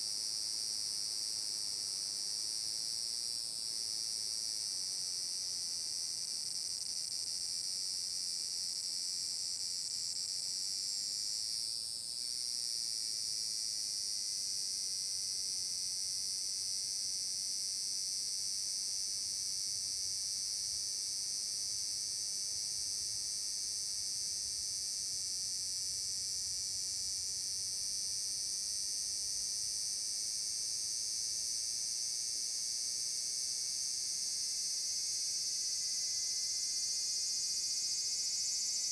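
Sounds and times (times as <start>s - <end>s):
cicada drone: 18.8s - 38.9s.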